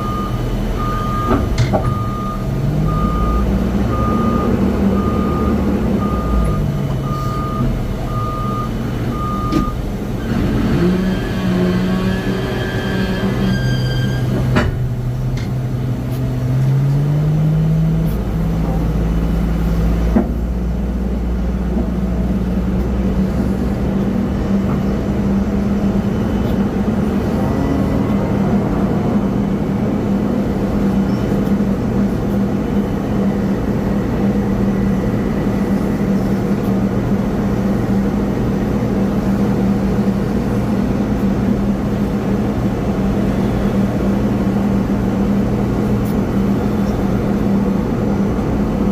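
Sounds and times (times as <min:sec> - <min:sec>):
airliner machine drone: 0:17.8 - 0:48.9.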